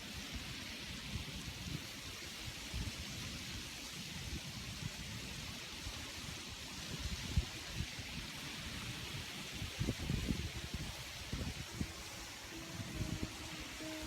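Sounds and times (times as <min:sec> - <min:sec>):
steady outdoor hiss: 0:00.0 - 0:14.0.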